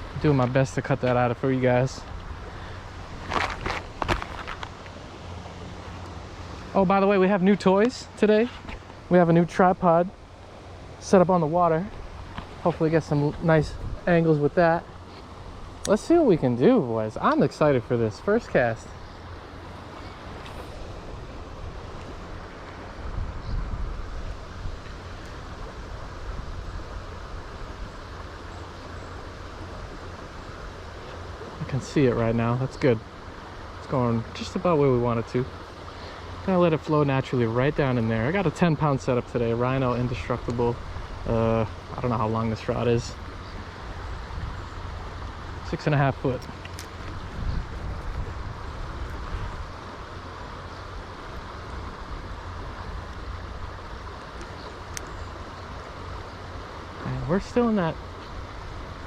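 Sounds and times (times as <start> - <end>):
river water flowing: 0.0 - 59.0
wind buffeting microphone: 11.8 - 14.7, 19.7 - 28.0, 43.2 - 49.8.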